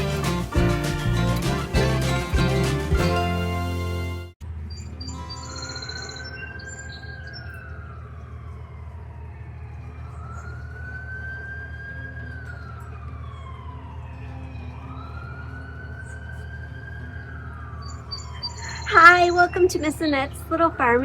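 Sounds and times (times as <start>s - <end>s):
siren wailing: 4.7s - 21.0s.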